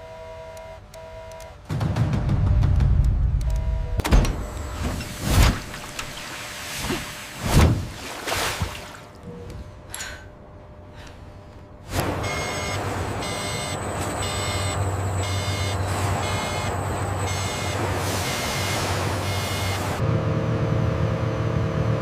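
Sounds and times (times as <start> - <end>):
low machine hum: 2.9 - 22.0
high-pitched electronic beeping: 12.2 - 19.8.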